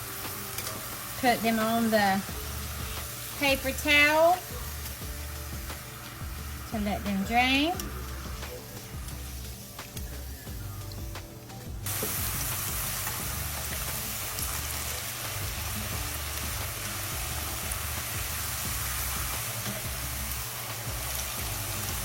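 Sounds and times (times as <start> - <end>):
food sizzling in hot oil: 0.0 - 22.0.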